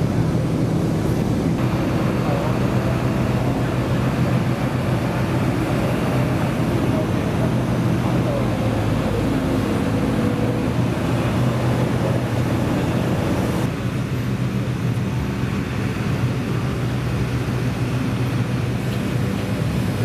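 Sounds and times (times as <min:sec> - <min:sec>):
engine running with low hum: 0:00.0 - 0:20.0.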